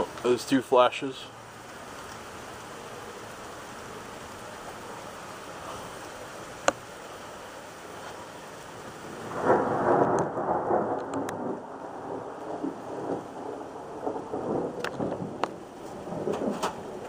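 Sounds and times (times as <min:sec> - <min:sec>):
rain hissing: 0:00.0 - 0:17.0
thunder rolling: 0:09.0 - 0:17.0.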